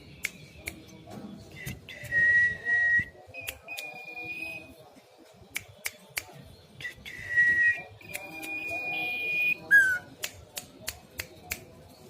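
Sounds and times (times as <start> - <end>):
songbird whistling hoarse notes: 6.8 - 10.2.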